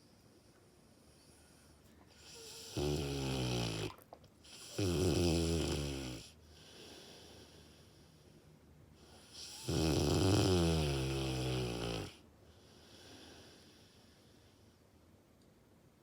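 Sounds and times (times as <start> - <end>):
dog snoring loudly: 2.2 - 6.3, 9.1 - 12.2.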